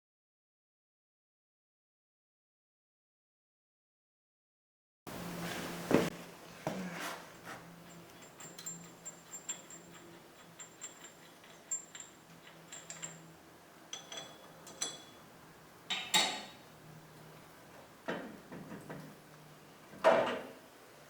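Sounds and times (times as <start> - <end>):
metal clinks: 7.8 - 13.3, 13.9 - 15.2.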